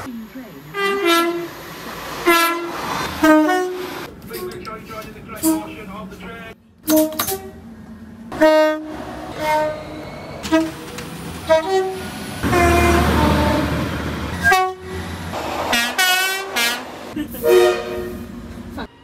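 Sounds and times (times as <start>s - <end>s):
train rumble: 0.0s - 19.0s
train horn blasts: 0.7s - 1.5s, 2.2s - 4.0s, 8.3s - 10.8s, 11.4s - 15.1s, 15.7s - 18.3s.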